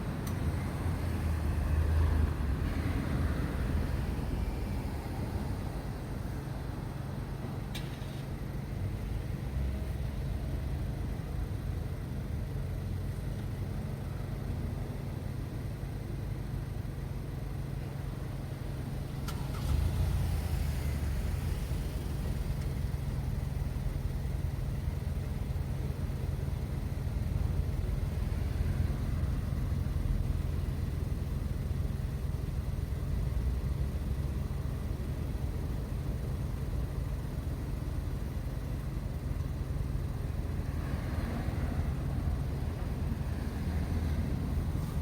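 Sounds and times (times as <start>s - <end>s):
vehicles passing by: 0.0s - 13.3s, 18.7s - 24.0s, 38.1s - 45.0s
low engine rumble: 0.0s - 45.0s.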